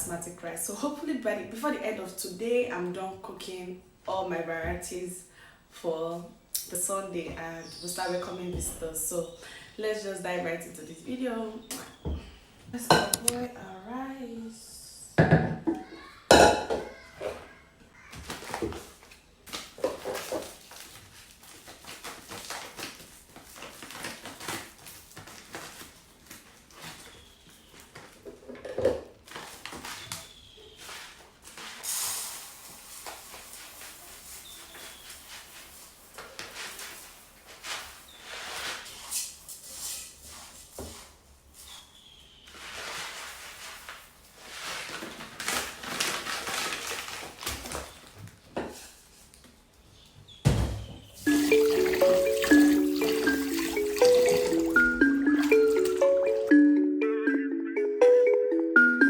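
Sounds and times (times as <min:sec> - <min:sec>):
pots and utensils clattering: 0:15.2 - 0:17.5.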